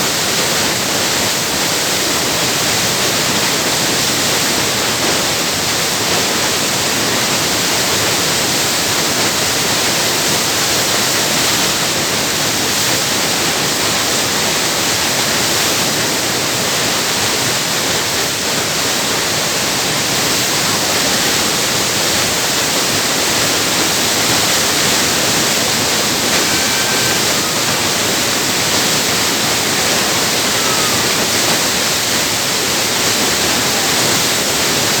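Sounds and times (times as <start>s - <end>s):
water rushing down spillway: 0.0s - 35.0s.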